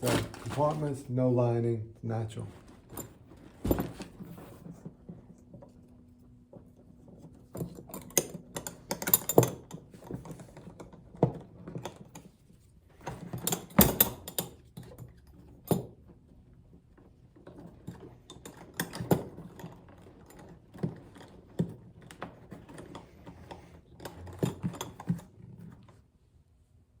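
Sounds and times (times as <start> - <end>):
briefcase being handled: 0.0 - 1.1, 2.4 - 5.8.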